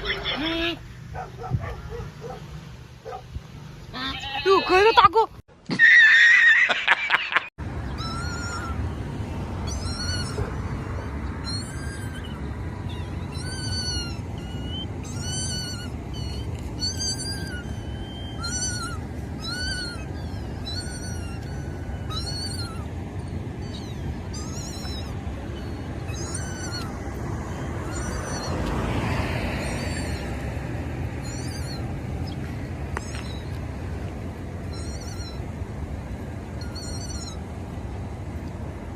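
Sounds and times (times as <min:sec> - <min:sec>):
high-pitched animal-like call: 0:07.9 - 0:08.9, 0:09.6 - 0:23.0, 0:23.6 - 0:30.4, 0:31.1 - 0:31.9, 0:33.0 - 0:33.6, 0:34.6 - 0:35.5, 0:36.5 - 0:37.5.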